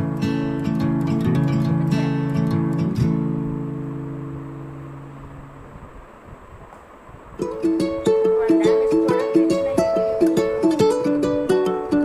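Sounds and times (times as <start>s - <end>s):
plucked ukulele notes: 7.4s - 12.0s.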